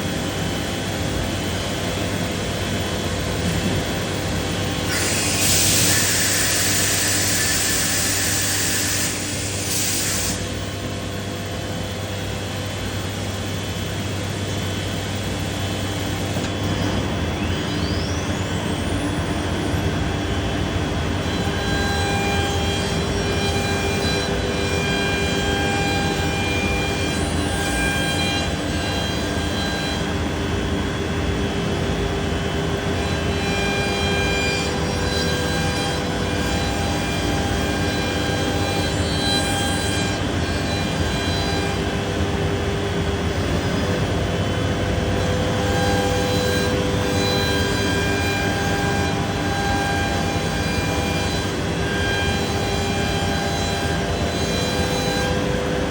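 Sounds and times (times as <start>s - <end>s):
machine whining tones: 0.0s - 55.9s
router milling wood: 0.3s - 31.9s, 32.8s - 55.9s.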